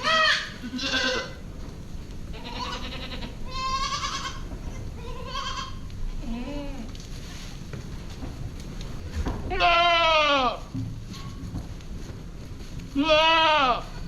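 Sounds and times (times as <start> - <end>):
goats bleating: 0.0 - 1.4, 2.3 - 7.0, 9.5 - 10.7, 13.0 - 14.0.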